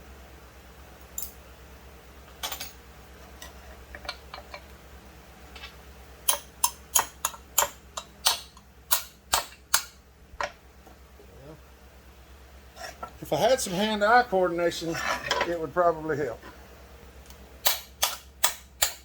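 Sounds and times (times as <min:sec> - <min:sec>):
hammer tapping on metal pin: 0:06.3 - 0:10.0.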